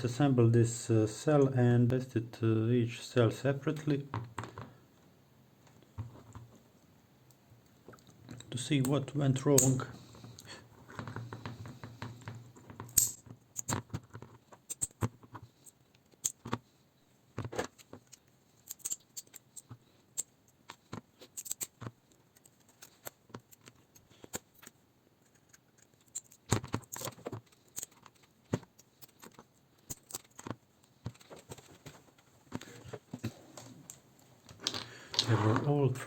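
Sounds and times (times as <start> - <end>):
metallic clicks and snips: 14.5 - 16.6, 17.7 - 30.5.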